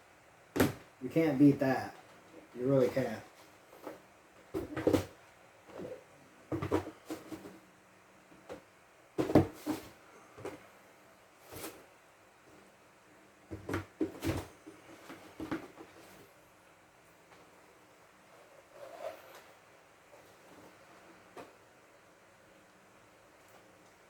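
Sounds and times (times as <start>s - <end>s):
cardboard boxes knocking: 4.6s - 5.2s, 9.2s - 9.9s.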